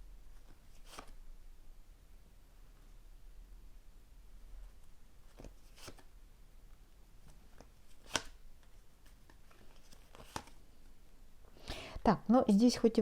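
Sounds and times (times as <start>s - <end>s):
cards tapping and flicking: 5.3s - 6.1s, 7.3s - 10.6s.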